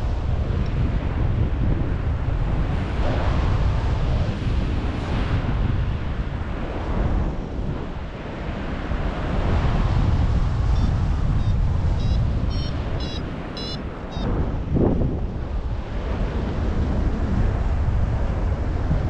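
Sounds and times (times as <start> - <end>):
wind buffeting microphone: 0.0 - 19.0
short high electronic beeps: 10.8 - 14.3.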